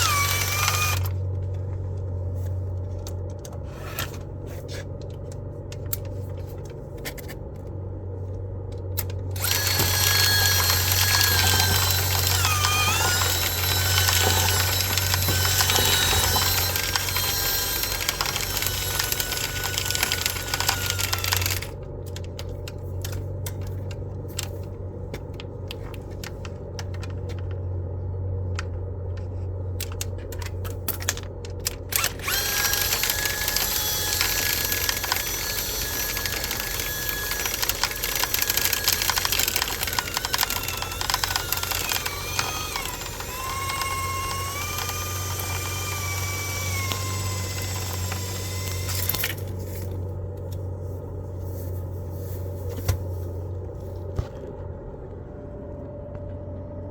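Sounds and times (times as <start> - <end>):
power tool motor whining: 0.0 - 1.2, 9.3 - 21.8, 31.9 - 50.0
scattered clicks: 29.8 - 49.4.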